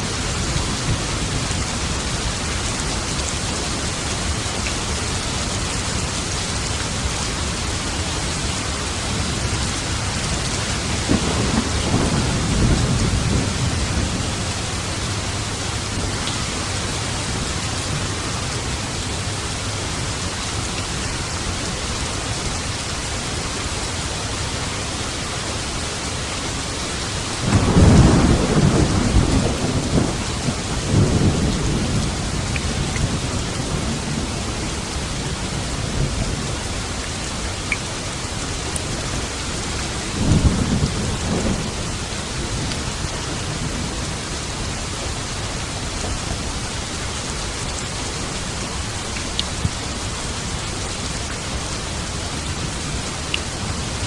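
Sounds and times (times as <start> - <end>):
heavy rain: 0.0 - 54.0
thunder rumbling: 9.2 - 18.8, 27.4 - 36.6, 40.1 - 44.5.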